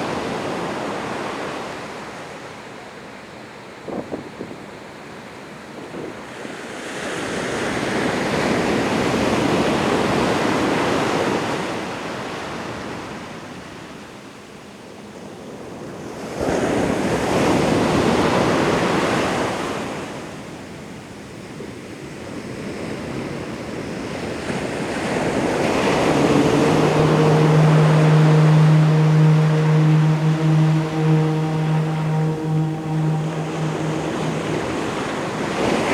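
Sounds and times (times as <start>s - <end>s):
ocean waves washing in: 25.5s - 35.6s
wave breaking: 25.5s - 35.8s.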